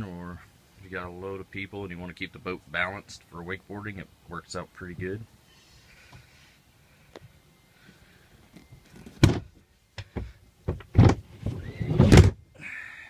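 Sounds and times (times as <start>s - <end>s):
bench seat heavy thunks: 9.1s - 12.4s.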